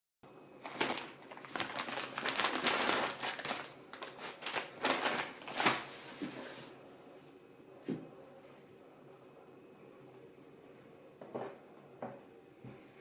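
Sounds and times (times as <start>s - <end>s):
rustling and crinkling: 0.6s - 6.8s.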